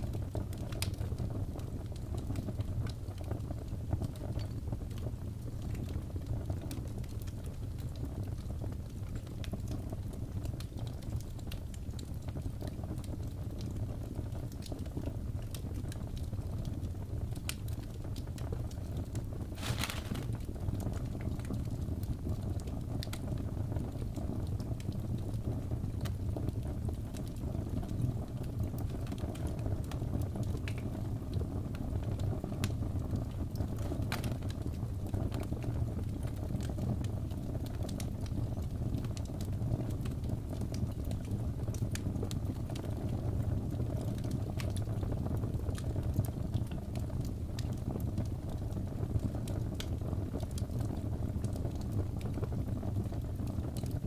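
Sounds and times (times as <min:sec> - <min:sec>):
fire crackling and popping: 0:00.0 - 0:54.0.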